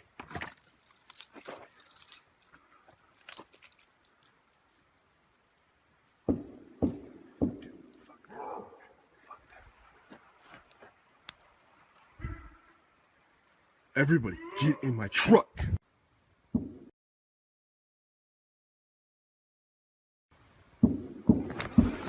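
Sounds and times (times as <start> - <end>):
keys jangling: 0.3 - 8.2
heavy thumps: 6.3 - 8.0, 16.6 - 16.9.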